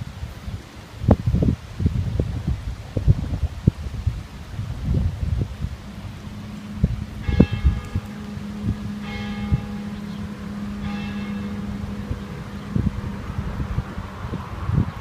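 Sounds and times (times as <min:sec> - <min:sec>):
church bell ringing: 0:05.7 - 0:15.0.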